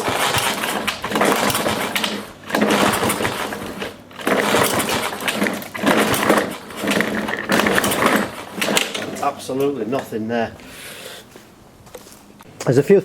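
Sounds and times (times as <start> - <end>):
mower engine turning over: 0.0 - 10.1
recoil pull-cord starter yanked: 0.0 - 10.1.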